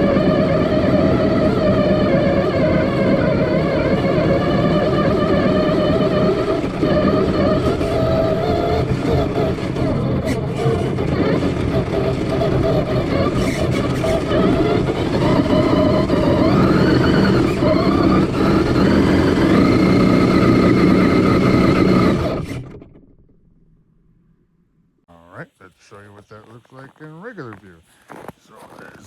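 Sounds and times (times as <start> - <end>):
rc truck motor whining: 0.0 - 23.1
tyres and chassis rough noise: 0.0 - 29.0.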